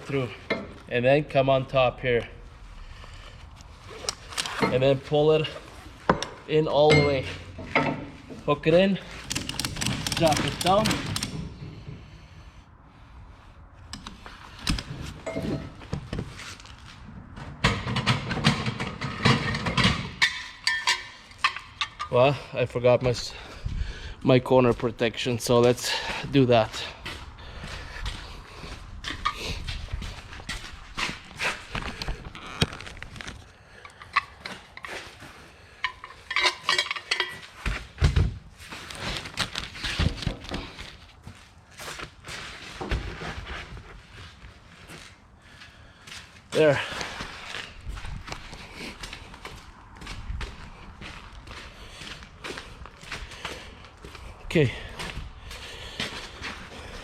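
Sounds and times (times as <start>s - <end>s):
ratchet strap hardware clanking: 3.9s - 4.9s, 6.0s - 11.9s, 19.1s - 22.4s, 35.8s - 37.7s
metallic clinks and rattles: 19.2s - 22.2s, 35.8s - 37.6s.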